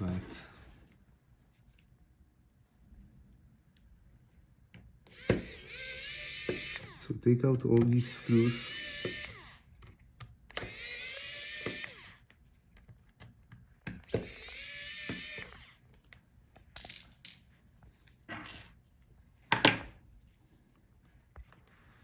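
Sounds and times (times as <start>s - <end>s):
electric screwdriver running: 5.1s - 9.7s, 10.5s - 12.3s, 14.0s - 15.8s.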